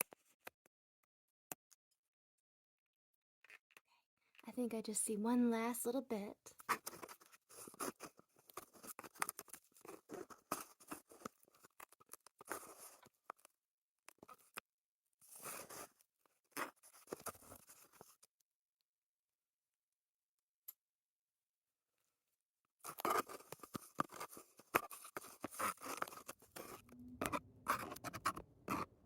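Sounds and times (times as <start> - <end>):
small clicks snips and scratches: 6.5 - 18.4, 22.8 - 28.9.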